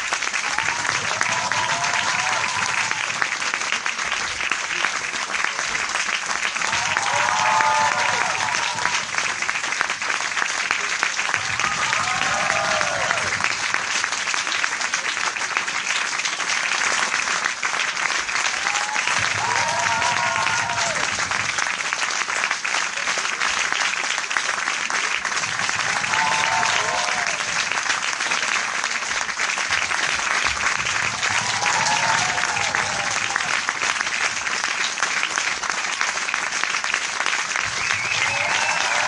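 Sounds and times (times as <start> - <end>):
audience applauding: 0.0 - 39.0
person cheering: 0.4 - 3.1, 6.7 - 9.1, 11.4 - 13.4, 18.5 - 21.1, 25.9 - 27.6, 31.2 - 33.6, 38.0 - 39.0.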